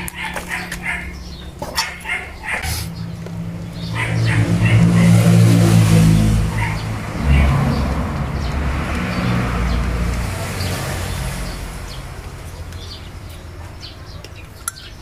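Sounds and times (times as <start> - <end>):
small engine running loudly: 2.4 - 9.7.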